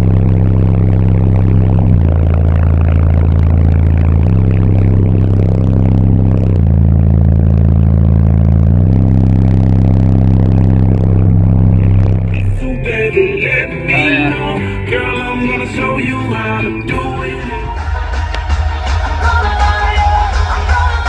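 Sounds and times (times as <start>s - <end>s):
distorted subwoofer bassline: 0.0s - 21.0s.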